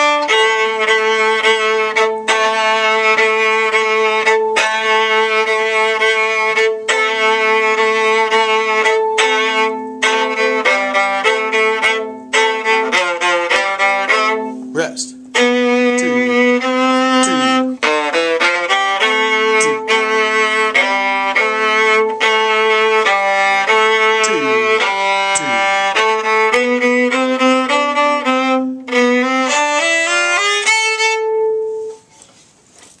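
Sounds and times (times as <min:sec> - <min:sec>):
viola melody: 0:00.0 - 0:32.6.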